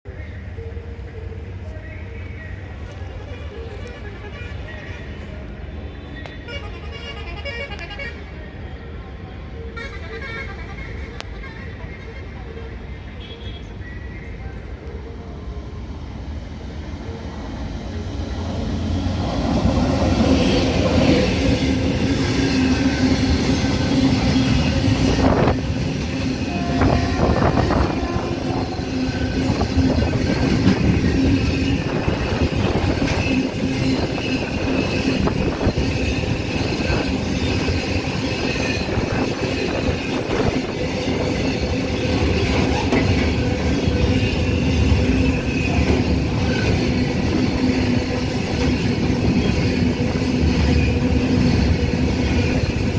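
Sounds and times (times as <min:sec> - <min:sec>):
train wheels clattering on rails: 0:18.5 - 0:52.9.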